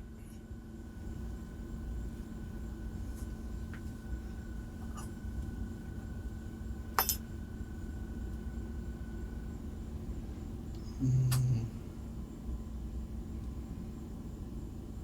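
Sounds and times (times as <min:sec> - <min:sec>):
faint steady hum: 0:00.0 - 0:15.0
metallic clink of lock picks: 0:07.0 - 0:07.2.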